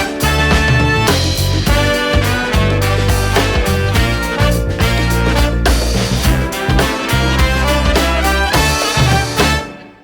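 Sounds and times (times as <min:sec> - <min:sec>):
swing music with brass: 0:00.0 - 0:10.0.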